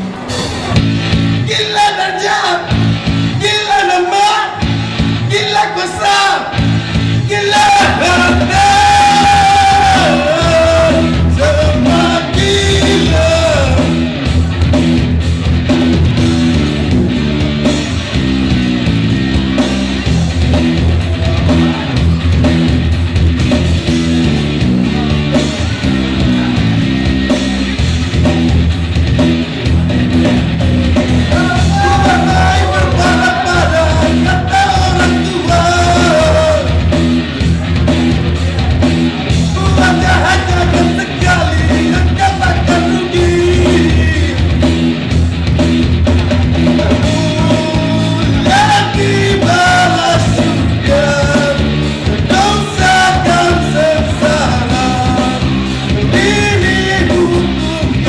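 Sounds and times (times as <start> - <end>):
rock band playing: 0.0 - 58.0
man singing: 1.4 - 14.1, 31.2 - 36.9, 39.4 - 44.6, 46.6 - 58.0.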